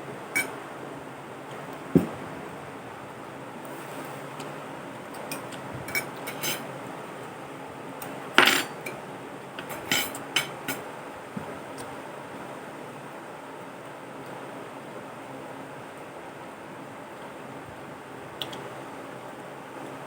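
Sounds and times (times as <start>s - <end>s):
utensils clinking on a plate: 0.3s - 0.6s, 5.2s - 6.7s, 8.0s - 9.0s, 9.6s - 10.9s.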